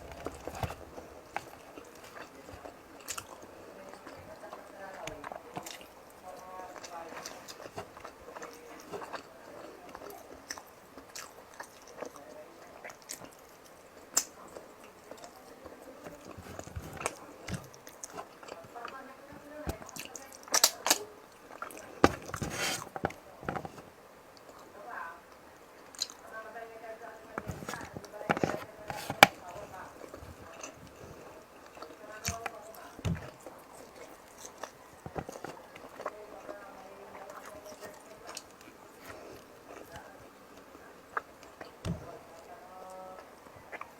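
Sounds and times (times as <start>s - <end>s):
dull thud: 0.0s - 2.1s, 33.0s - 33.4s
mouth chewing with wet smacks: 0.0s - 26.3s, 27.2s - 43.9s.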